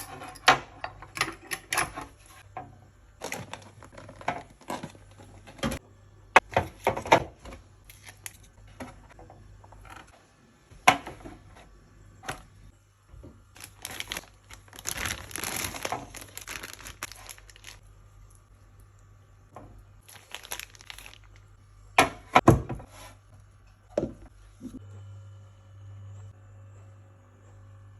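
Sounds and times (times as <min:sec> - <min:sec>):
plastic bags crinkling: 0:13.5 - 0:17.8, 0:20.0 - 0:21.6.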